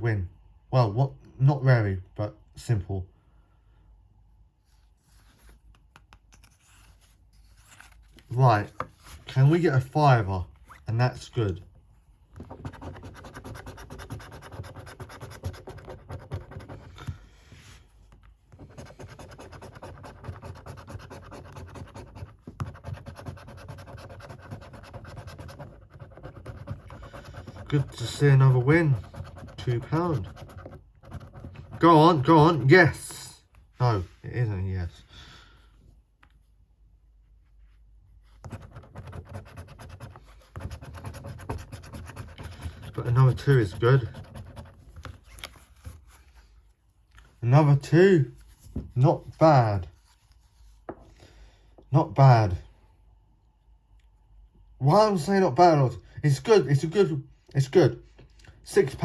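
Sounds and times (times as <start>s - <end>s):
scratchcard being scratched: 12.5s - 16.9s, 18.6s - 32.7s, 38.4s - 44.8s.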